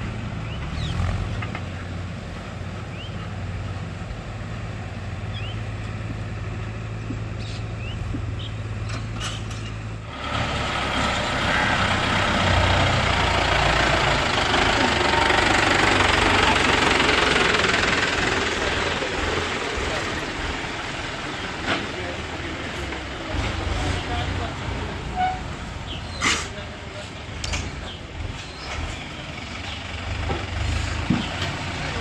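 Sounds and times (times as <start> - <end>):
diesel engine idling: 0.0 - 32.0
rough engine noise with hiss: 0.0 - 32.0.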